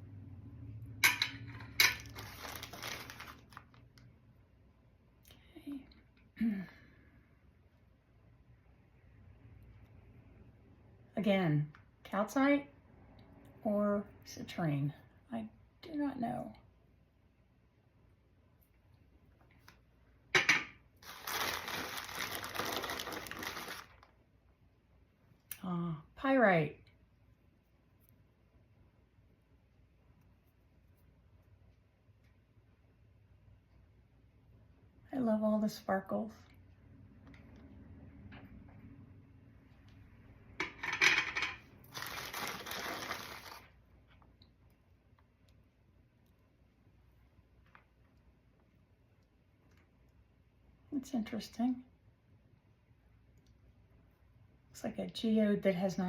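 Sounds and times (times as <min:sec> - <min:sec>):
packing wrap crinkling: 0:02.0 - 0:04.1, 0:21.0 - 0:24.2, 0:41.8 - 0:43.8.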